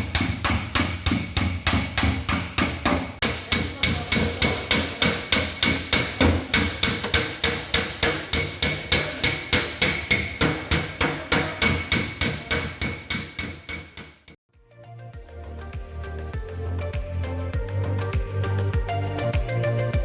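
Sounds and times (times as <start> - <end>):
hammer tapping sheet metal: 0.0 - 14.4.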